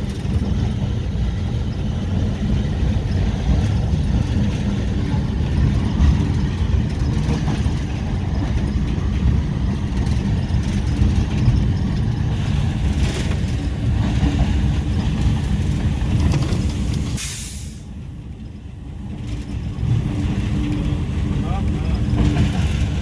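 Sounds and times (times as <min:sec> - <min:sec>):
diesel locomotive rumble: 0:00.0 - 0:23.0
sharp burst of hiss: 0:17.1 - 0:17.9.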